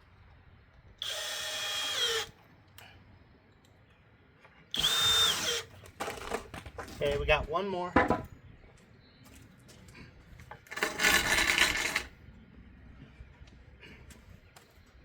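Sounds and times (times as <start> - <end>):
power drill driving screws: 1.0 - 2.3, 4.7 - 6.3, 10.8 - 12.1.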